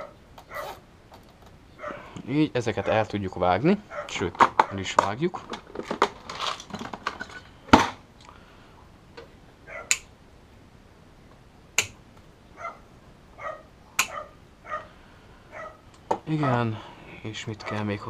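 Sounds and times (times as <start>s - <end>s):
dog barking faintly: 1.8s - 2.2s, 2.8s - 3.1s, 3.9s - 4.9s, 9.7s - 10.0s, 12.6s - 16.8s
cutters snipping clicks: 9.9s - 10.1s.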